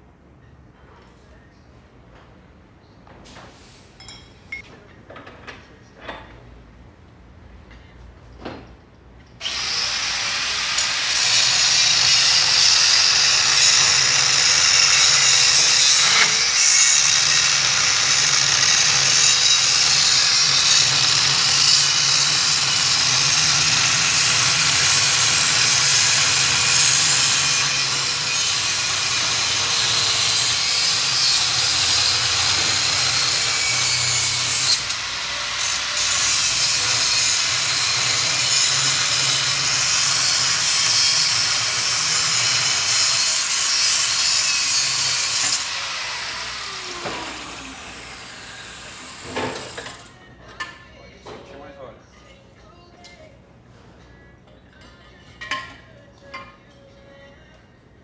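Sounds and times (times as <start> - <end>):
power tool grinding metal: 9.4 - 50.1.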